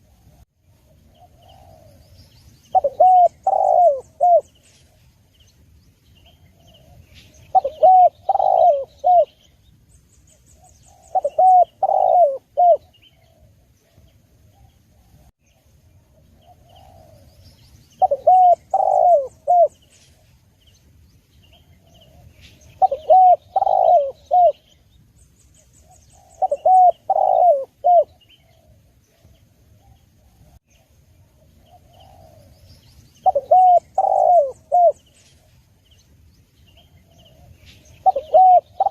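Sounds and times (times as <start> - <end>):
faint small birds chirping: 0.0 - 38.9
dove cooing: 0.8 - 5.0, 6.2 - 9.5, 10.6 - 15.3, 16.1 - 20.4, 21.5 - 24.7, 25.8 - 30.8, 31.4 - 35.6, 36.8 - 38.9.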